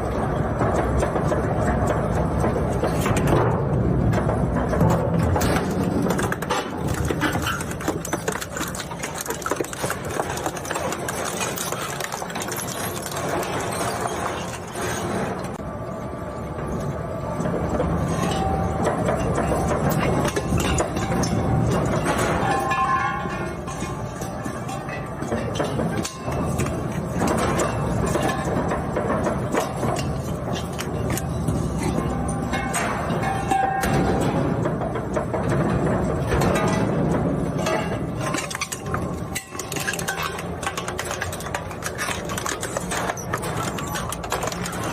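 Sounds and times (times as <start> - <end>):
plastic shredder rumbling: 3.6 - 15.6.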